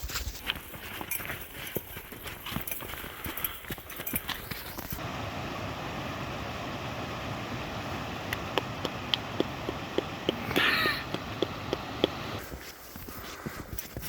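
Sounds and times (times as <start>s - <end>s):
blizzard wind blowing: 4.4s - 14.0s.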